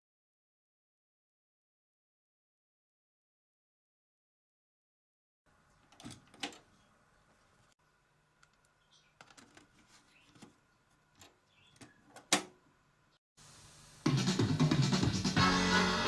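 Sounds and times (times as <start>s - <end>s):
sharp clicks and knocks: 11.2s - 12.6s
faint hiss: 13.4s - 14.6s.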